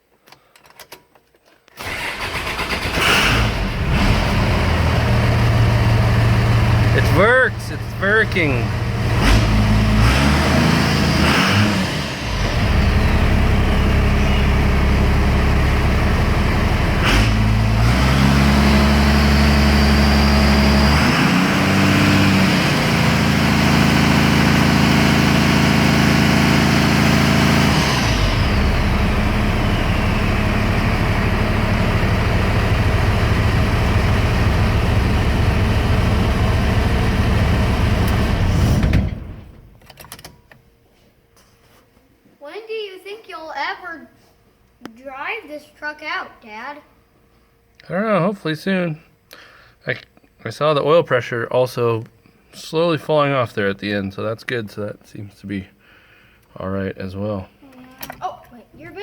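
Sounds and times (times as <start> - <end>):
diesel engine running: 1.8 - 39.6
high turbo whine: 2.9 - 39.6.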